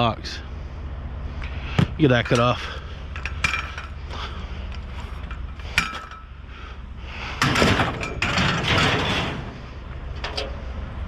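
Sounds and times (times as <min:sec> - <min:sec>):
scrap metal scraping and rustling: 0:02.1 - 0:06.3, 0:07.3 - 0:10.8.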